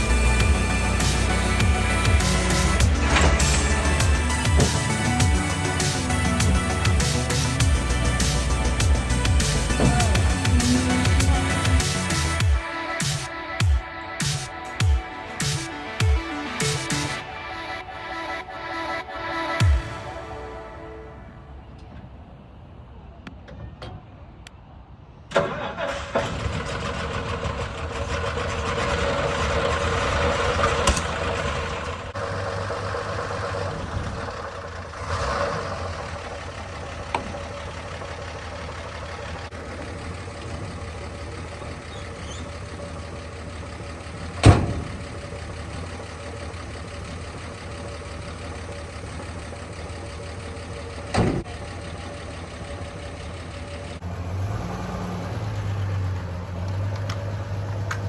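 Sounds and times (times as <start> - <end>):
engine idling: 0.0 - 20.2, 25.4 - 58.0
pickup truck engine starting: 0.0 - 22.0, 25.3 - 58.0
sharp bang: 44.4 - 45.0.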